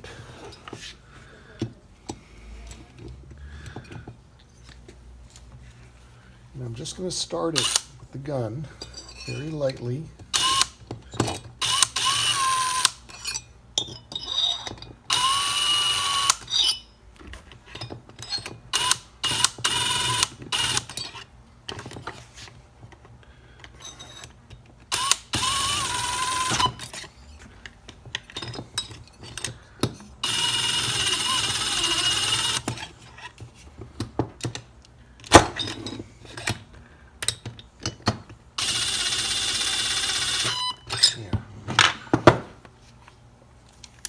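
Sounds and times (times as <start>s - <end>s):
cordless power driver whining: 7.6s - 7.9s, 15.1s - 16.5s, 24.9s - 26.8s, 30.2s - 32.9s, 38.6s - 40.8s
tool and bit rattling: 7.6s - 7.9s, 24.9s - 27.1s, 30.2s - 33.0s.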